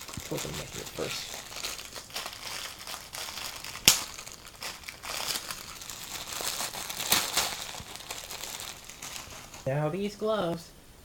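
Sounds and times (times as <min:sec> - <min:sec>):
packaging crinkling and rustling: 0:00.0 - 0:10.6.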